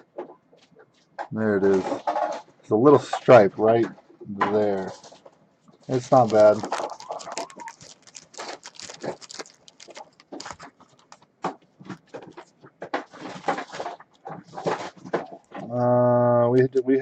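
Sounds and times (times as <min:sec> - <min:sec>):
trading cards rustling: 0:05.9 - 0:12.6.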